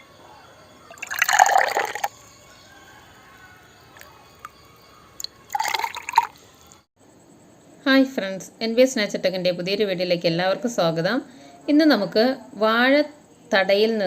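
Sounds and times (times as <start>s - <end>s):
liquid pouring and splashing: 0.9s - 2.1s, 5.5s - 6.4s.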